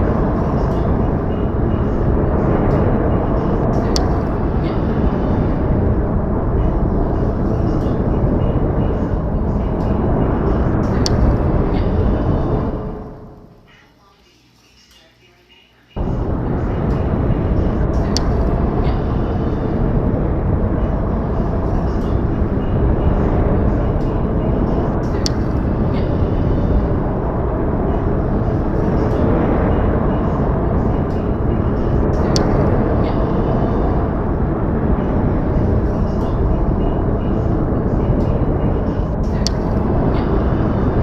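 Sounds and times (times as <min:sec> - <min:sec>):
low rumbling noise: 0:00.0 - 0:14.2, 0:16.0 - 0:41.0.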